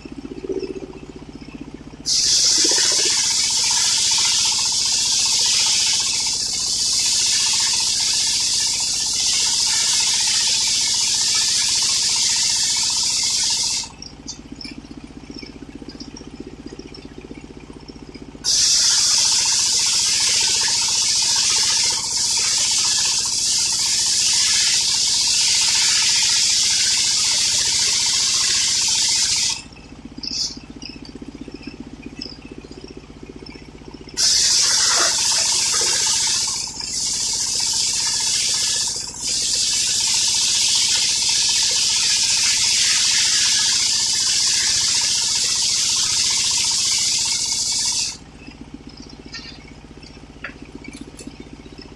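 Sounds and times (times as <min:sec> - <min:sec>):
saw engine running: 0:00.0 - 0:51.9
circular saw cutting wood: 0:02.1 - 0:14.0, 0:18.5 - 0:29.7, 0:34.2 - 0:48.2.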